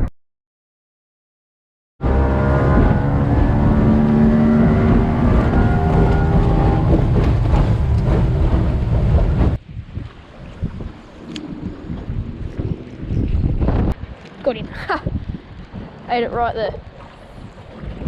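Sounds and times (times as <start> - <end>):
outboard motor running: 2.0 - 9.6.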